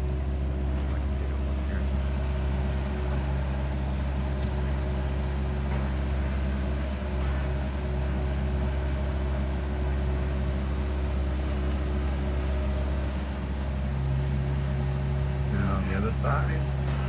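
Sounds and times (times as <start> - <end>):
diesel engine running under load: 0.0 - 17.0.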